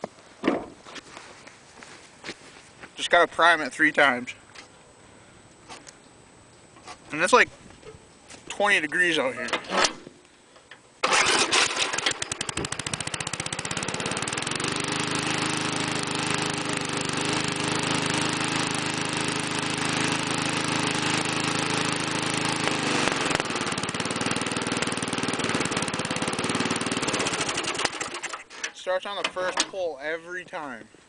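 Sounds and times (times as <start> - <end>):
push mower engine running: 11.0 - 29.7.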